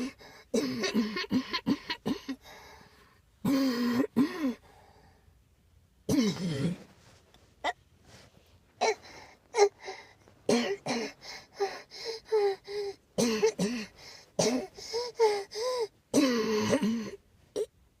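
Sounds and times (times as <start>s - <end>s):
person coughing: 0.0s - 2.5s, 3.4s - 4.6s, 6.1s - 6.9s, 10.5s - 11.2s, 13.2s - 15.3s, 16.1s - 17.7s.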